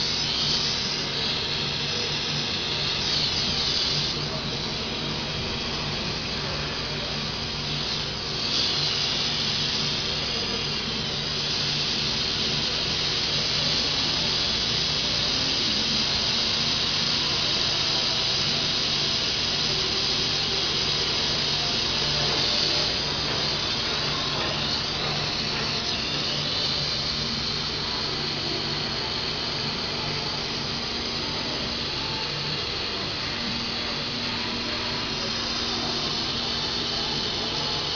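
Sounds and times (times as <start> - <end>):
machinery low hum: 0.0 - 12.0
machinery high hiss: 0.0 - 37.9.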